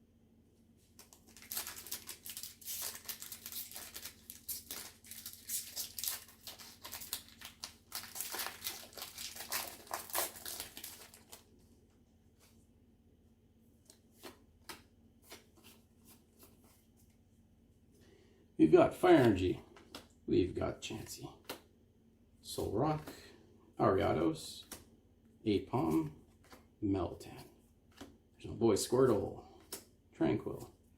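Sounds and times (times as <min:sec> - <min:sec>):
foil wrapper tearing and crinkling: 0:01.0 - 0:11.4.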